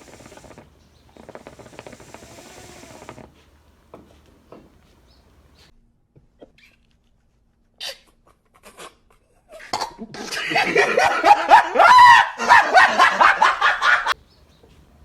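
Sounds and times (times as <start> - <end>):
young men laughing: 10.0 - 14.2.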